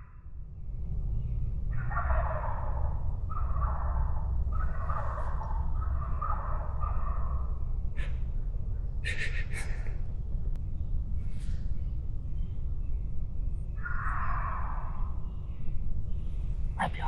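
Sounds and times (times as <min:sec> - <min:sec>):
turkey harsh calls: 0:01.7 - 0:08.2
turkey gobbling: 0:01.8 - 0:07.4.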